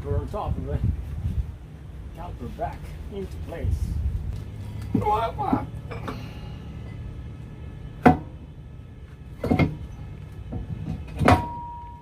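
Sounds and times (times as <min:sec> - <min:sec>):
metal brake caliper clanking: 0:09.4 - 0:12.0.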